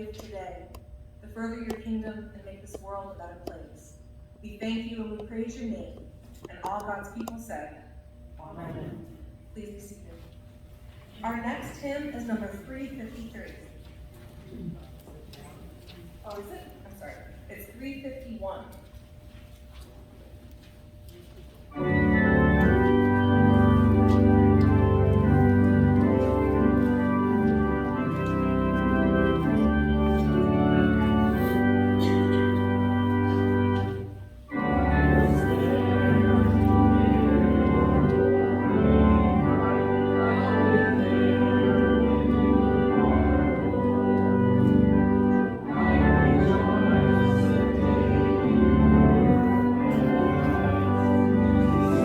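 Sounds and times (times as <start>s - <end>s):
organ playing sustained chords: 21.7s - 52.0s.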